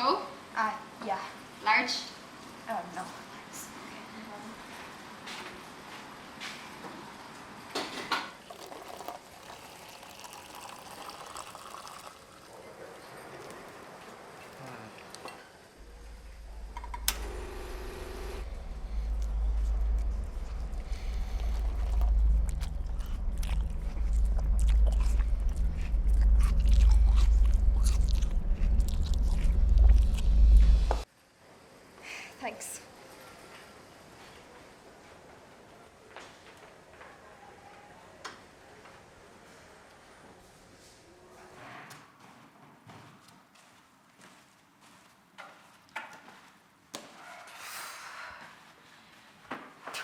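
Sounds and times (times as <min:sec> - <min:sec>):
hot liquid hissing into cup: 0:08.5 - 0:12.6
steady low rumble: 0:15.8 - 0:31.0
chewing and crunching mouth noises: 0:18.4 - 0:31.0.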